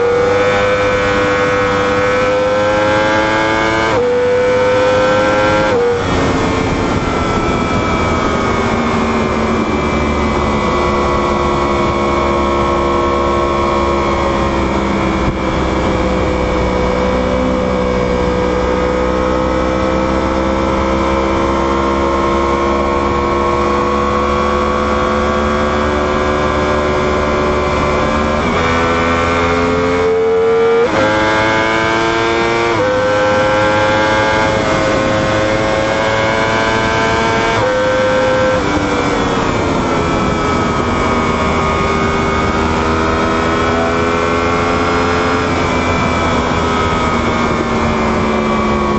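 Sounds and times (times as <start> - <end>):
motorcycle engine at high revs: 0.0 - 48.9
wind rush: 0.0 - 48.9.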